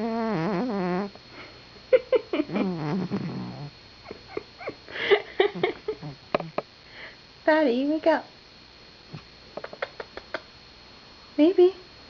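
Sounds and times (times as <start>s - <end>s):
cat snoring: 0.0s - 1.2s, 2.5s - 3.7s.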